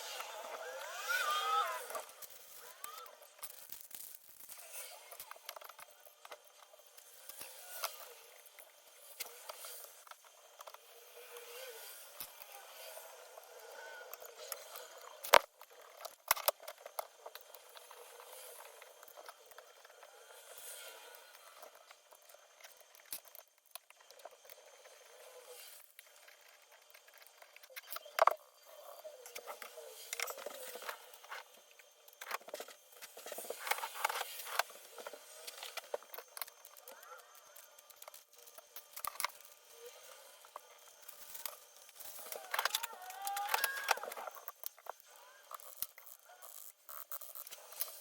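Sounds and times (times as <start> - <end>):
plastic keyboard parts clicking: 14.1 - 17.7, 41.0 - 46.1.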